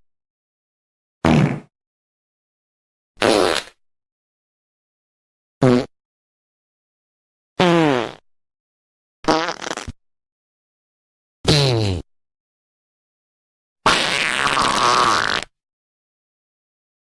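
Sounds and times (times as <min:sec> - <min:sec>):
fart sounds: 0:01.2 - 0:01.7, 0:03.2 - 0:03.8, 0:05.6 - 0:05.9, 0:07.6 - 0:08.2, 0:09.2 - 0:10.0, 0:11.5 - 0:12.1, 0:13.8 - 0:15.6.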